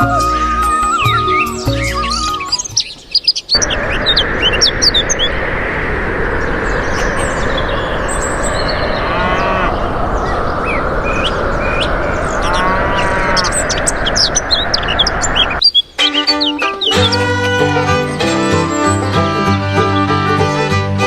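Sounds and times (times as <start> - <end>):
short music intro: 0.0 - 2.5, 16.0 - 21.0
birds chirping: 0.0 - 20.7
steady rushing noise: 3.6 - 15.6.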